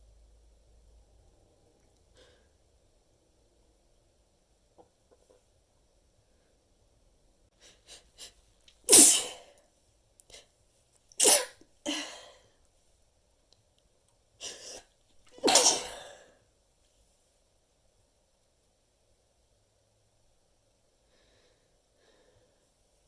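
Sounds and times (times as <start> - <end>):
person stifling sneezes: 8.9 - 9.5, 11.2 - 12.3, 14.4 - 14.8, 15.4 - 16.3.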